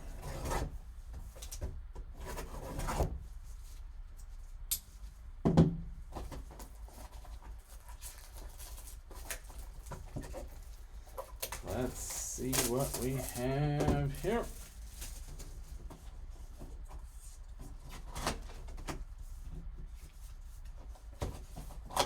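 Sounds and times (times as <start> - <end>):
cardboard rubbing and scraping: 0.1 - 0.8, 2.1 - 3.4, 6.2 - 19.4.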